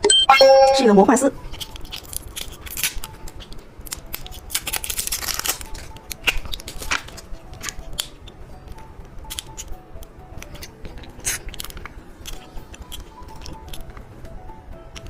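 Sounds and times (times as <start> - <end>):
plastic packaging crinkling: 1.5 - 8.1.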